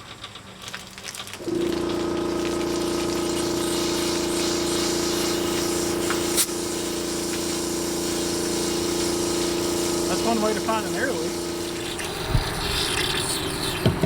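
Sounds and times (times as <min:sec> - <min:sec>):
steady hum: 0:01.4 - 0:14.0
compressed air rushing hiss: 0:02.8 - 0:14.0.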